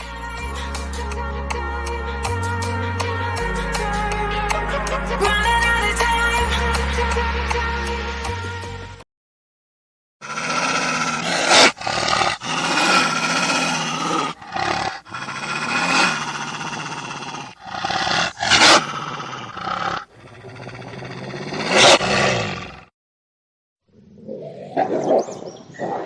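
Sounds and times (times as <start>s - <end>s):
wolf growling and snarling: 10.2s - 22.9s.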